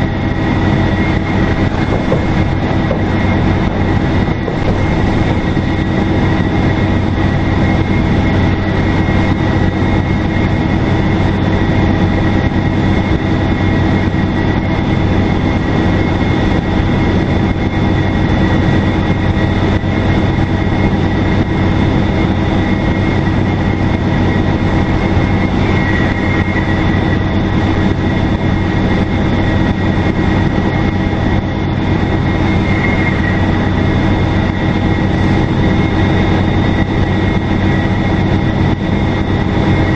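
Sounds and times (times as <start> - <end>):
bus engine low drone: 0.0 - 39.9
high turbo whistle: 32.0 - 37.3.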